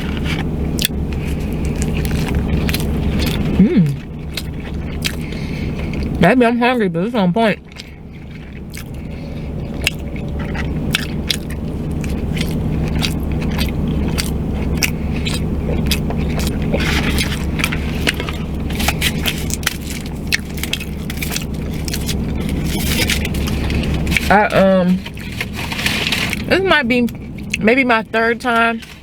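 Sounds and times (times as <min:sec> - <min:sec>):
chewing with mouth clicks: 0:00.0 - 0:06.2, 0:07.6 - 0:29.0
steady low hum: 0:00.0 - 0:29.0.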